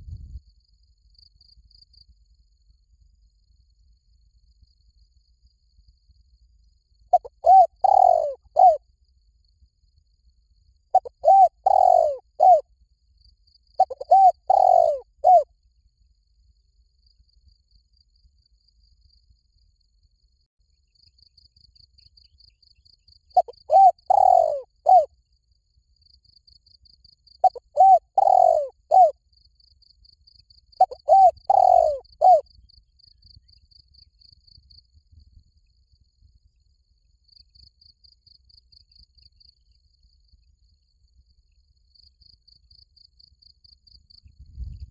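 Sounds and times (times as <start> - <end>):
faint insects chirping: 0.0 - 44.9
dove cooing: 7.1 - 8.8, 11.0 - 12.6, 13.8 - 15.4, 23.4 - 25.1, 27.4 - 29.1, 30.8 - 32.4.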